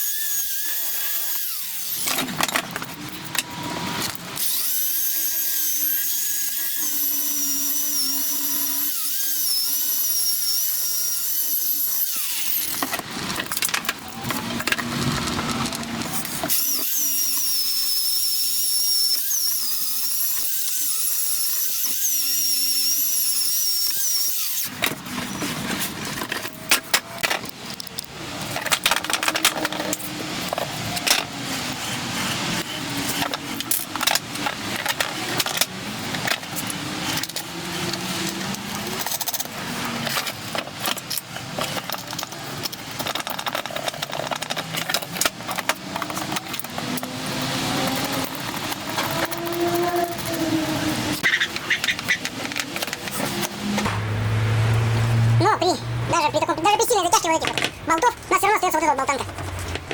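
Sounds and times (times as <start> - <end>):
power drill whining: 0.0 - 2.4, 3.6 - 12.9, 14.3 - 26.7, 43.0 - 53.8
tools and parts clattering: 0.6 - 4.8, 7.2 - 17.5, 23.8 - 53.9, 57.1 - 58.3, 59.2 - 59.9.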